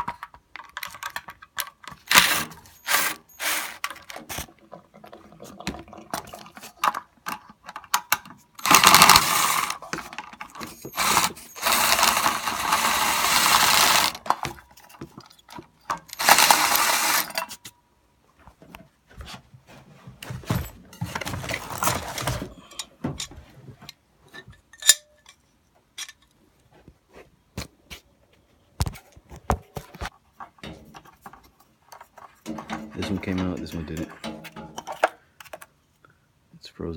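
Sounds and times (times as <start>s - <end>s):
power tool running: 2.1s - 3.8s, 8.6s - 9.8s, 10.6s - 14.3s, 16.1s - 17.4s
tools knocking on pipes: 32.4s - 35.0s.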